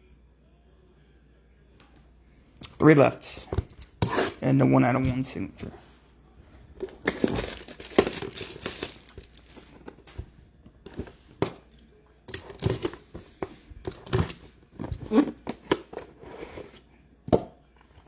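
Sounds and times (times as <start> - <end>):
cards and packaging rustling: 6.7 - 11.7
wrapper crinkling and tearing: 6.8 - 9.8.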